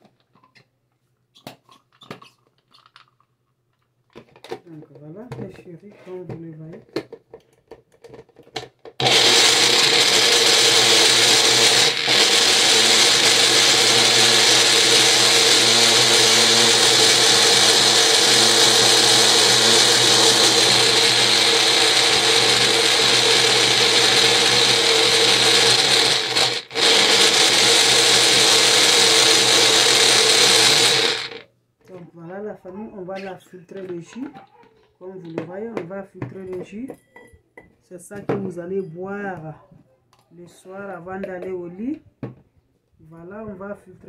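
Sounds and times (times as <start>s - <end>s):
electric blender running: 9.0s - 31.4s.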